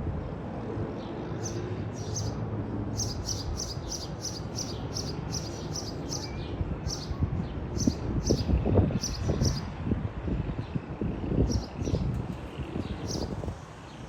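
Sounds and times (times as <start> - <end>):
bird chirping: 3.0 - 7.1.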